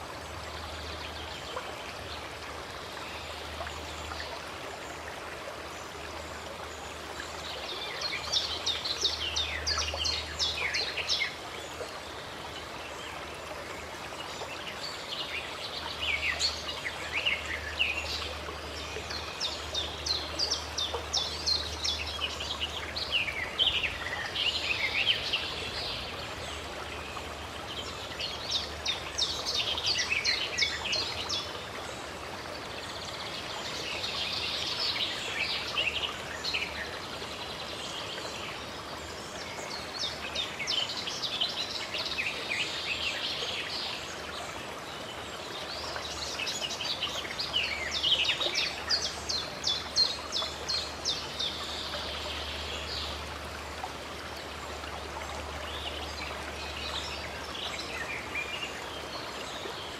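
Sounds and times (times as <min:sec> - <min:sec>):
songbirds chirping: 0:00.0 - 0:59.9
stream water rushing: 0:00.0 - 0:59.9.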